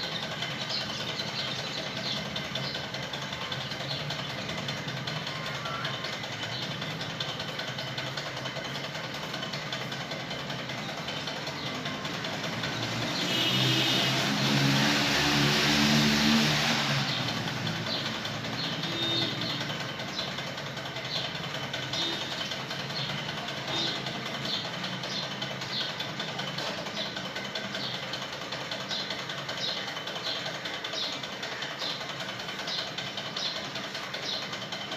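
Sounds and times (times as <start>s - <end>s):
small birds chirping: 0.0s - 13.9s, 16.2s - 34.9s
vehicle engine passing: 11.7s - 19.4s.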